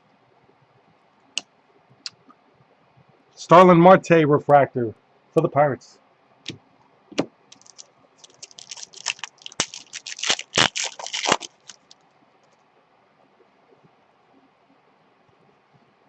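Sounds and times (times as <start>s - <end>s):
trading cards clicking and rustling: 7.2s - 12.0s.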